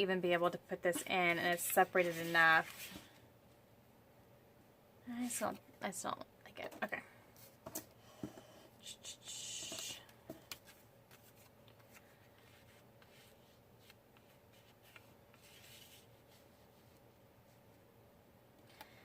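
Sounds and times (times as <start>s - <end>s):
paper rustling: 10.5s - 17.0s.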